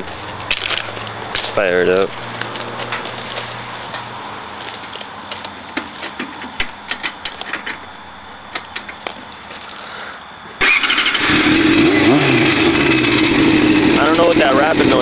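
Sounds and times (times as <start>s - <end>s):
motorcycle engine starting and running: 10.6s - 15.0s.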